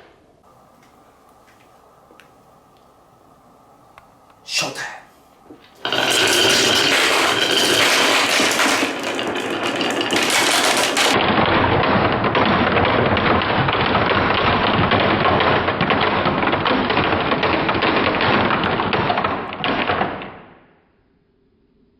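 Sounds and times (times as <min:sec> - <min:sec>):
balls rolling down wooden tracks: 0:05.6 - 0:20.5.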